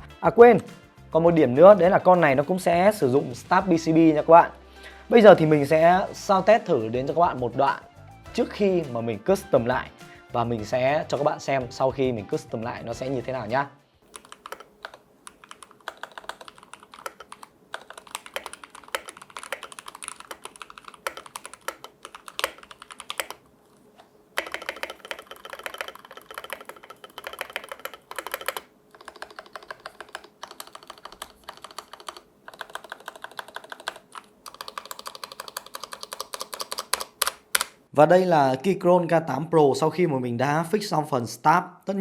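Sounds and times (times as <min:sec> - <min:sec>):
mechanical keyboard typing: 0:14.1 - 0:23.4, 0:24.4 - 0:37.8.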